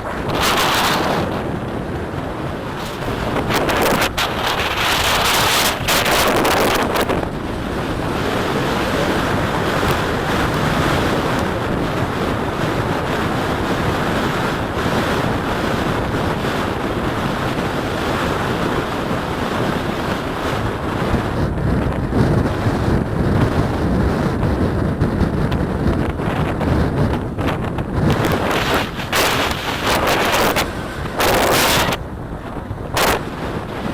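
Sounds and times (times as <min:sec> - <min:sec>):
waves washing: 0:00.0 - 0:14.2, 0:28.1 - 0:33.9
wind buffeting microphone: 0:00.0 - 0:33.9.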